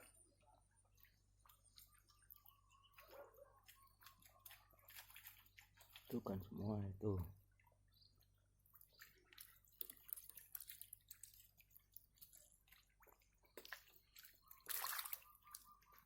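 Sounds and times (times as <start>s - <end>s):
splashes in muddy water: 3.0s - 6.5s, 8.6s - 16.0s.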